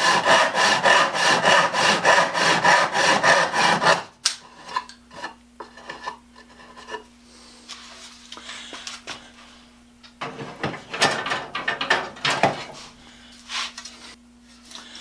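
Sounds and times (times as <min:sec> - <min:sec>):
hand saw cutting wood: 0:00.0 - 0:07.0
faint steady hum: 0:00.0 - 0:15.0.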